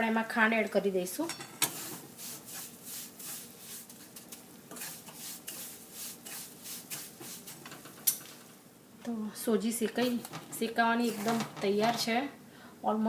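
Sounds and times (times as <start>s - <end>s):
spoon scraping a pan: 1.3s - 8.5s.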